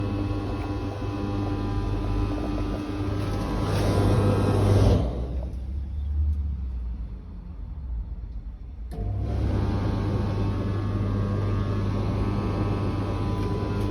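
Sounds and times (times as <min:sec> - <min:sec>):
tumble dryer motor hum: 0:00.0 - 0:05.5, 0:09.0 - 0:13.9.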